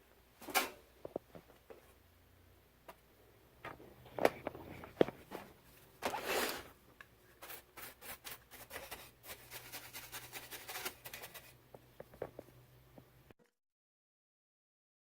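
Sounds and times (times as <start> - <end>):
scraping rub: 7.3 - 11.6.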